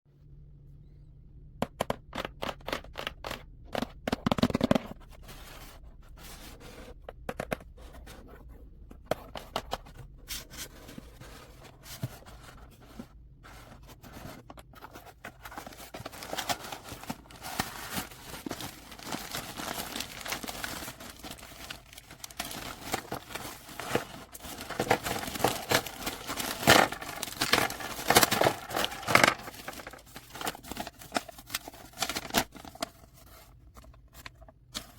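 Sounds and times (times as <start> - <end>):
packaging crinkling: 14.0 - 33.4.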